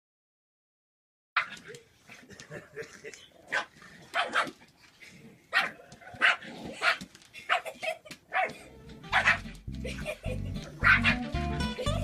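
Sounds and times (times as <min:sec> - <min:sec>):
dog barking: 0:03.5 - 0:04.6, 0:05.5 - 0:09.6, 0:10.8 - 0:11.3.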